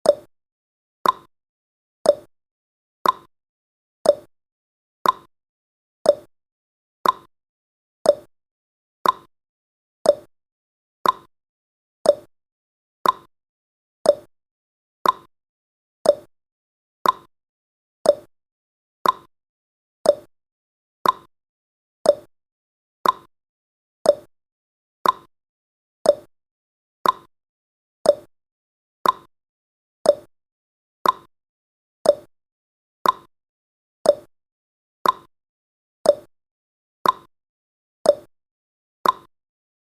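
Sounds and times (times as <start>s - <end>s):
timer ticking: 0.0s - 0.3s, 1.0s - 1.3s, 2.0s - 2.3s, 3.0s - 3.3s, 4.0s - 4.3s, 5.0s - 5.3s, 6.0s - 6.3s, 7.0s - 7.3s, 8.0s - 8.3s, 9.0s - 9.3s, 10.0s - 10.3s, 11.0s - 11.3s, 12.0s - 12.3s, 13.0s - 13.3s, 14.0s - 14.3s, 15.0s - 15.3s, 16.0s - 16.3s, 17.0s - 17.3s, 18.0s - 18.3s, 19.0s - 19.3s, 20.0s - 20.3s, 21.0s - 21.3s, 22.0s - 22.3s, 23.0s - 23.3s, 24.0s - 24.3s, 25.0s - 25.3s, 26.0s - 26.3s, 27.0s - 27.3s, 28.0s - 28.3s, 29.0s - 29.3s, 30.0s - 30.3s, 31.0s - 31.3s, 32.0s - 32.3s, 33.0s - 33.3s, 34.0s - 34.3s, 35.0s - 35.3s, 36.0s - 36.3s, 37.0s - 37.3s, 38.1s - 38.3s, 39.0s - 39.3s.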